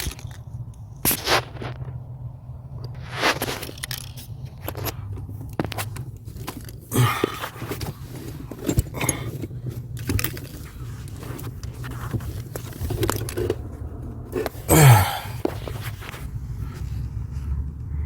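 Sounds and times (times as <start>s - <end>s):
tools and parts being handled: 3.4s - 14.7s.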